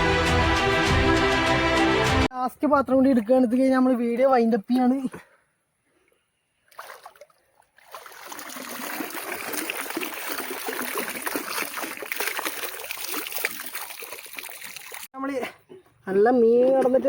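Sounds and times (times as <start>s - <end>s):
water splashing and trickling: 2.8s - 15.8s.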